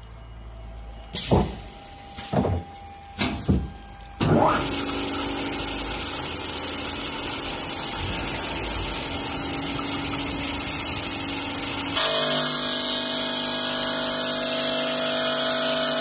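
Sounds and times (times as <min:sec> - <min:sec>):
saw motor humming and whining: 0:04.4 - 0:16.0.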